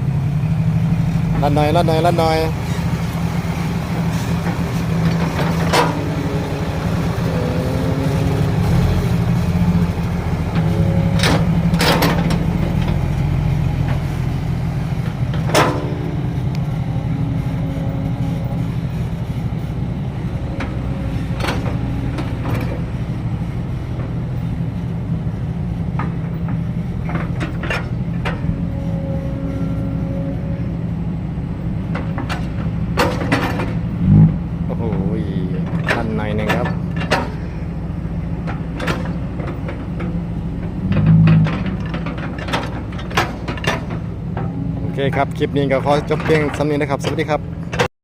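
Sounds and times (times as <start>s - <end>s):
heavy diesel engine running: 0.0s - 47.9s
metal clanks and knocks: 4.4s - 6.4s, 9.7s - 14.2s, 15.0s - 16.8s, 20.5s - 23.0s, 25.8s - 30.0s, 31.8s - 34.0s, 34.9s - 37.6s, 38.4s - 47.9s.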